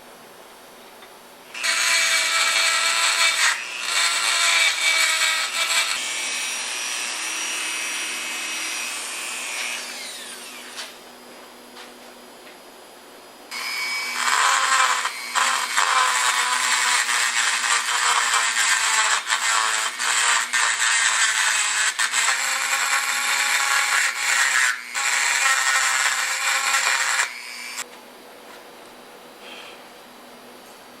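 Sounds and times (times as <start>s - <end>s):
power grinder grinding metal: 1.6s - 10.8s, 13.5s - 27.8s.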